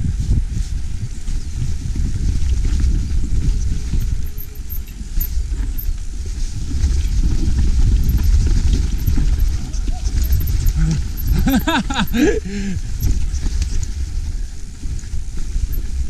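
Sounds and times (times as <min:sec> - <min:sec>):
car interior road and engine rumble: 0:07.6 - 0:13.2.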